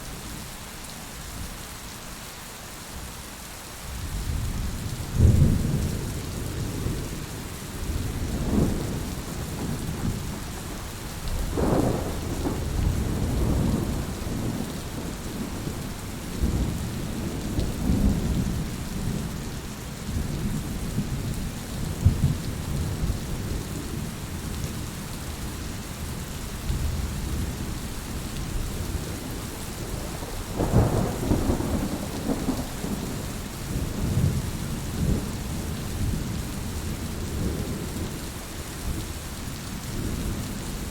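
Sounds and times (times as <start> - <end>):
rain hissing: 4.2 - 40.9
thunder rumbling: 7.8 - 19.4, 28.5 - 36.5.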